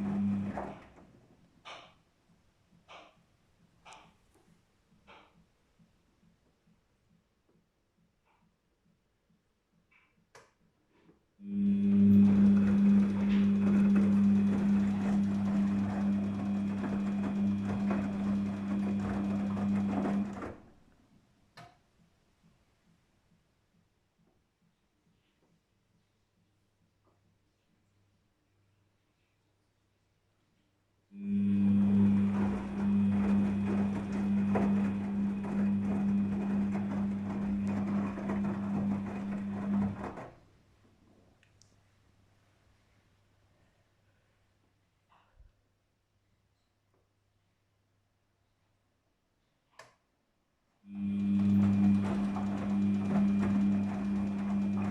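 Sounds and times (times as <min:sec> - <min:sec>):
washing machine humming: 0:00.0 - 0:01.8, 0:11.4 - 0:21.0, 0:31.2 - 0:40.5, 0:50.9 - 0:54.9.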